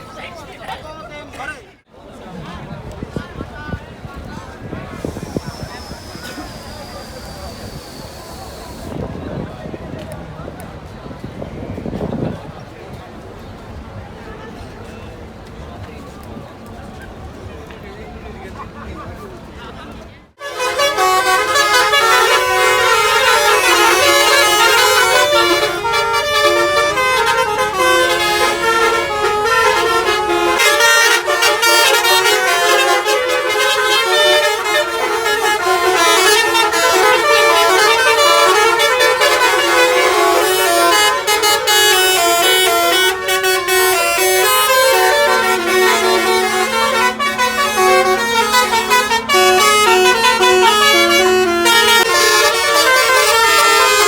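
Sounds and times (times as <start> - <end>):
musical bus air horns: 4.7 - 9.2, 20.4 - 54.0
low steady horn tone: 4.7 - 9.4, 20.4 - 54.0.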